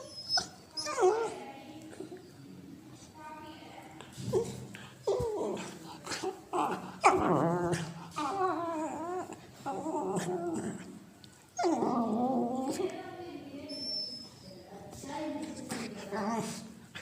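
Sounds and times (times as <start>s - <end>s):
puppy whining: 0.0s - 2.5s, 4.2s - 12.9s, 13.7s - 14.6s.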